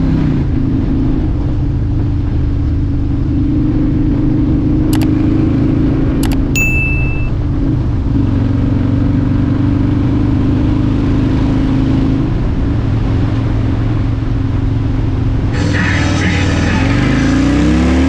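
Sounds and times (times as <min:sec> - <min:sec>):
sharp clicks: 0:05.0 - 0:05.2, 0:06.2 - 0:07.3
short high beep: 0:06.2 - 0:07.4.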